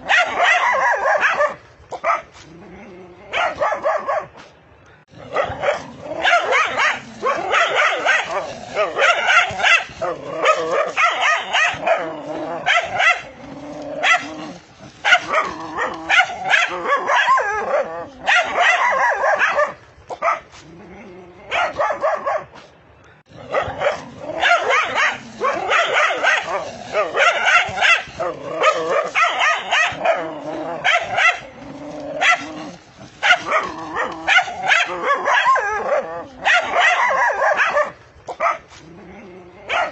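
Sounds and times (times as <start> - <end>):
dogs barking angrily: 0.0 - 2.5, 3.2 - 20.6, 21.4 - 39.0, 39.6 - 39.9.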